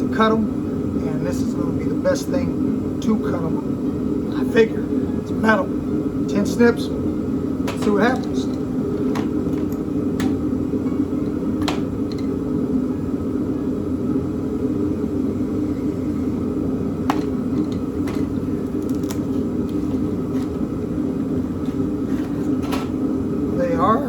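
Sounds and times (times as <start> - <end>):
low machine hum: 0.0 - 24.0.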